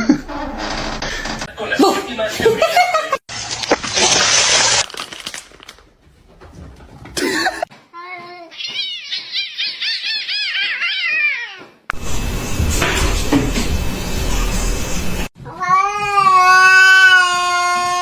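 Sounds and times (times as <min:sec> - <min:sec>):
cat meowing: 0:15.5 - 0:18.0.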